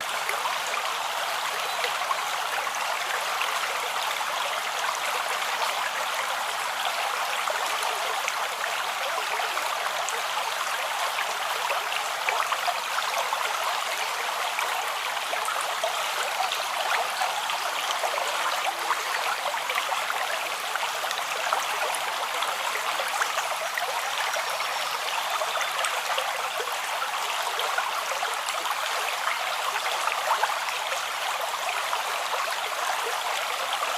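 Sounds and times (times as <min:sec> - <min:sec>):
creek water rushing and babbling: 0:00.0 - 0:33.9
water trickling and splashing: 0:00.0 - 0:33.9.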